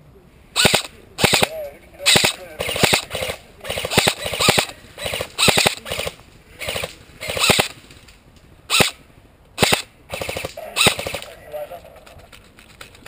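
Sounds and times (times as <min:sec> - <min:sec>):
airsoft rifle firing bursts: 0:00.6 - 0:01.5, 0:02.1 - 0:07.8, 0:08.7 - 0:09.0, 0:09.6 - 0:11.4.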